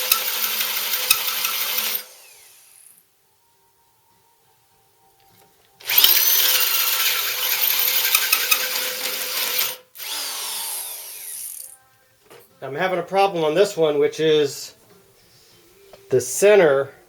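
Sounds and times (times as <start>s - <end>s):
power drill cutting metal: 0.0s - 3.0s, 5.8s - 11.8s.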